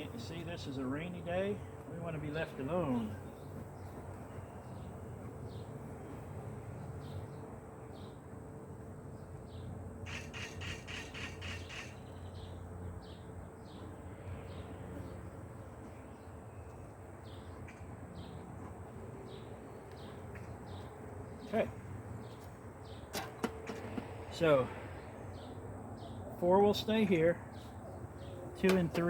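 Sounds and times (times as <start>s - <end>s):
honeybees buzzing: 0.0s - 10.6s, 12.4s - 29.0s
bird chirping: 9.2s - 15.2s, 27.4s - 29.0s
bird harsh rapid chatter: 10.1s - 12.2s.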